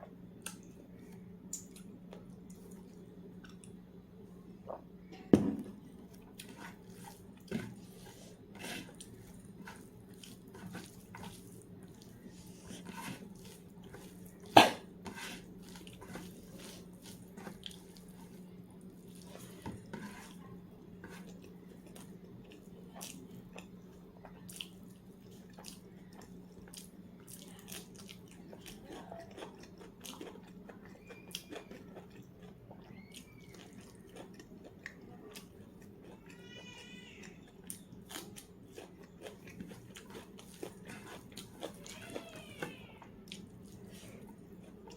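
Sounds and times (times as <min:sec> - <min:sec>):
steady low hum: 0:00.0 - 0:30.8
chewing: 0:06.1 - 0:36.4, 0:37.2 - 0:44.9.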